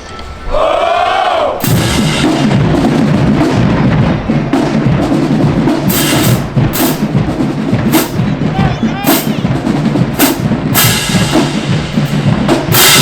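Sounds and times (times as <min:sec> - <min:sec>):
drumline cadence: 0:00.0 - 0:13.0
cymbal crashes: 0:01.6 - 0:03.9, 0:10.2 - 0:13.0.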